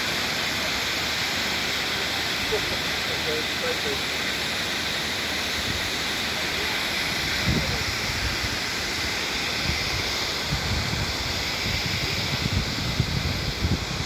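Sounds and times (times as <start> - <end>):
waterfall pouring: 0.0 - 14.0
wind buffeting microphone: 7.1 - 14.0.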